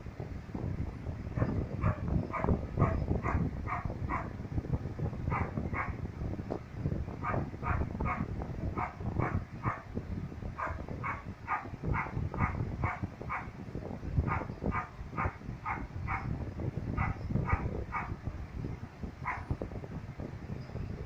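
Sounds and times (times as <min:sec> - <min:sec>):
dog barking: 0:01.4 - 0:04.3, 0:05.3 - 0:06.0, 0:07.2 - 0:09.9, 0:10.6 - 0:13.5, 0:14.2 - 0:16.3, 0:17.0 - 0:18.2, 0:19.2 - 0:19.5.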